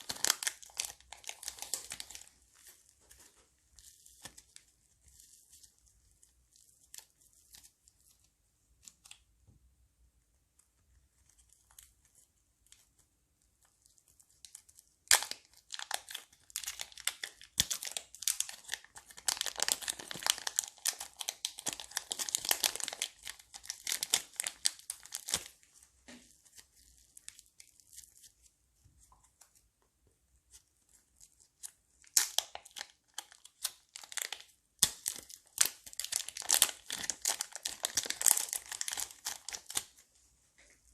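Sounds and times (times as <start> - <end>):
crunchy slime crackling: 0.0 - 8.2, 13.6 - 28.5, 30.5 - 40.0.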